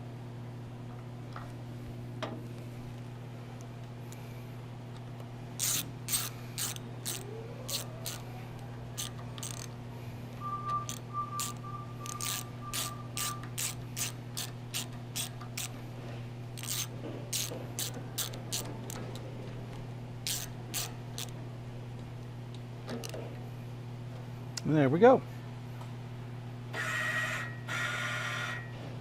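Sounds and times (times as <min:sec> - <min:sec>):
steady low hum: 0:00.0 - 0:26.8
ratchet wrench clicking: 0:05.6 - 0:08.2, 0:09.0 - 0:09.7, 0:10.8 - 0:15.8, 0:16.6 - 0:19.0, 0:20.2 - 0:21.4.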